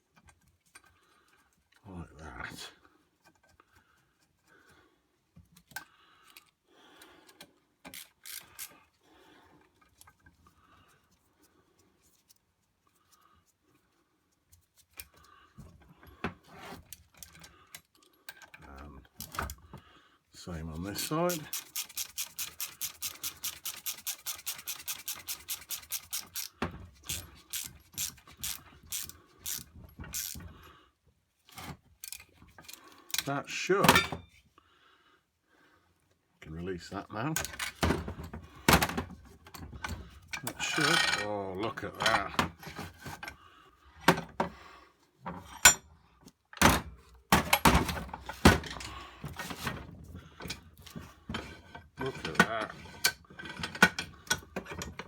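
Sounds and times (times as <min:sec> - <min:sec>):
ratchet wrench clicking: 0:07.9 - 0:08.7, 0:21.0 - 0:30.4, 0:32.0 - 0:32.2.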